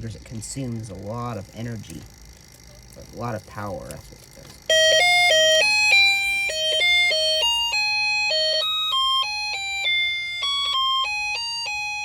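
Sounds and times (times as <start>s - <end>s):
buzzy electronic alarm beeps: 4.7s - 12.0s.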